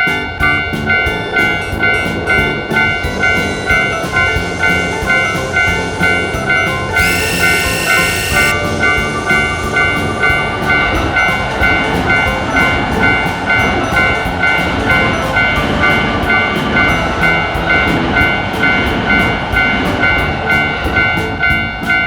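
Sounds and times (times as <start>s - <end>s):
passing train rumble and clatter: 0.0s - 7.2s, 8.6s - 22.0s
railroad crossing bell ringing: 0.4s - 21.2s.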